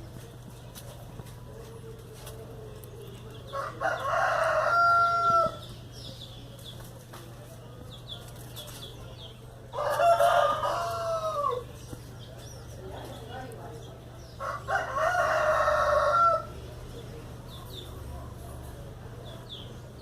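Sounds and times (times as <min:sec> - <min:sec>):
rooster crowing: 0:03.5 - 0:05.6, 0:09.8 - 0:11.7, 0:14.4 - 0:16.5.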